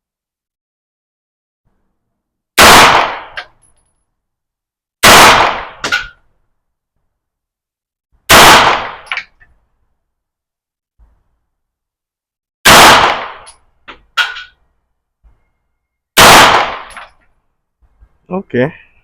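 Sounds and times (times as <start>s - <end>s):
gunshots: 2.6s - 3.5s, 5.0s - 6.2s, 8.3s - 9.2s, 12.6s - 13.5s, 16.2s - 17.1s.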